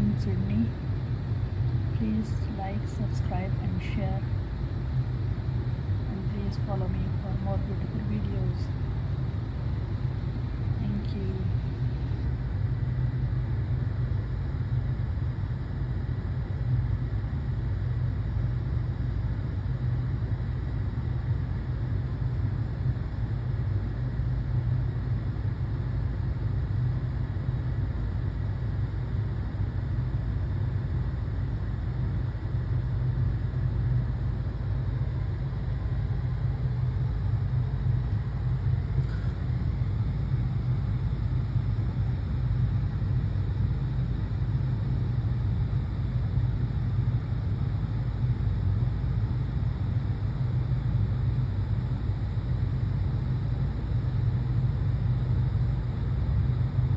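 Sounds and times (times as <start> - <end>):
steady low rumble: 0.0 - 56.9.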